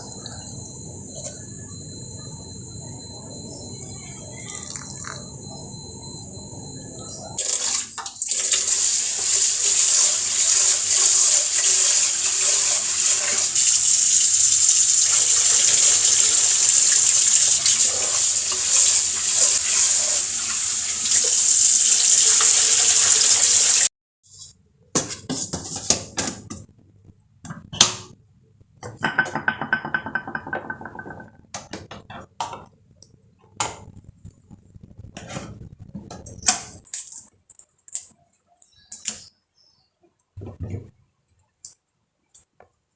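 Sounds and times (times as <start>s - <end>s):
water running from tap into sink: 7.4s - 23.9s
knocks and clatter: 29.0s - 31.3s.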